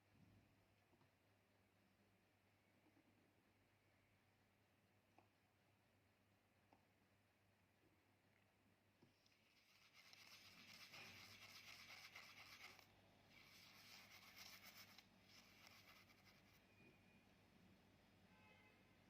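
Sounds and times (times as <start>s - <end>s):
paintbrush rubbing on surface: 9.2s - 16.7s.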